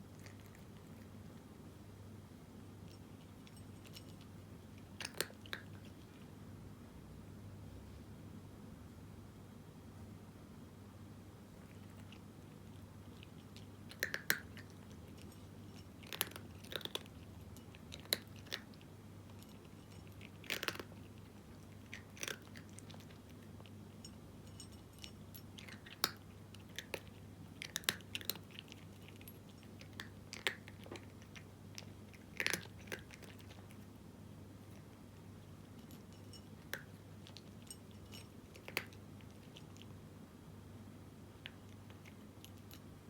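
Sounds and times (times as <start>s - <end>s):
cat crunching dry kibble: 0.0s - 1.4s, 2.8s - 6.3s, 11.6s - 34.0s, 34.6s - 39.9s, 41.4s - 42.9s
steady low hum: 0.0s - 43.0s.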